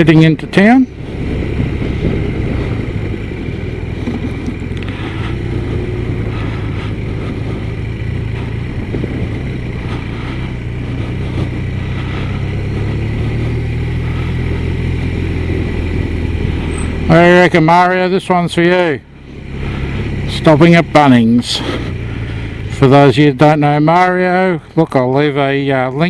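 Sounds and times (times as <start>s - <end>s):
wind noise: 0.0s - 14.3s
motorcycle engine running: 0.0s - 26.0s
road noise: 0.0s - 26.0s.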